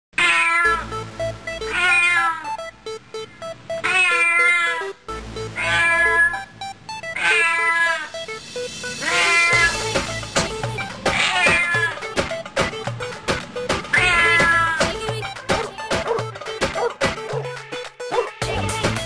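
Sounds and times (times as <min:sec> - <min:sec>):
cat meowing: 0:00.2 - 0:00.9, 0:01.5 - 0:02.7, 0:03.8 - 0:10.2, 0:11.0 - 0:12.2, 0:13.8 - 0:15.0, 0:18.1 - 0:19.0
plinking melody with low beat: 0:00.7 - 0:19.0.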